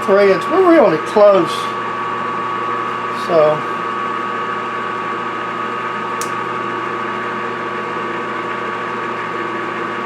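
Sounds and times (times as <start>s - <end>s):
metal lathe humming and whining: 0.0s - 10.0s.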